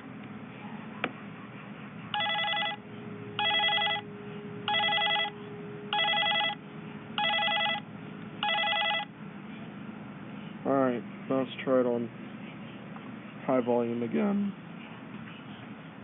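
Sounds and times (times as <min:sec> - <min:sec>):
telephone ringer warbling: 0:02.2 - 0:02.8, 0:03.4 - 0:04.1, 0:04.7 - 0:06.6, 0:07.2 - 0:09.1.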